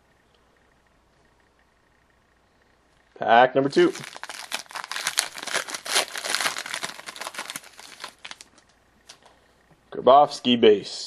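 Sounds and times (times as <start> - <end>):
wrapper being torn open and crinkled: 3.9 - 8.6.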